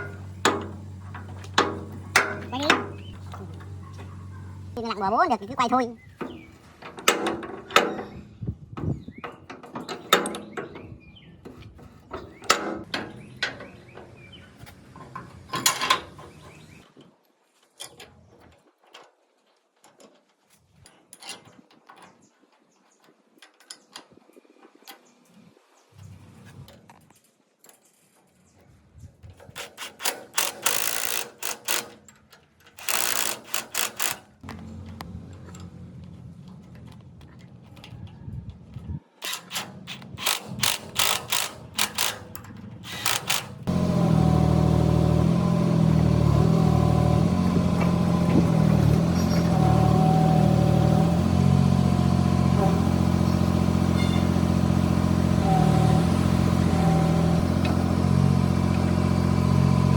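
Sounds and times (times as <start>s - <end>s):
metal parts clicking and knocking: 0.0s - 4.1s, 6.2s - 16.5s, 29.2s - 38.1s, 39.2s - 43.7s
harsh rapid metal scraping: 32.8s - 34.8s, 39.2s - 51.3s.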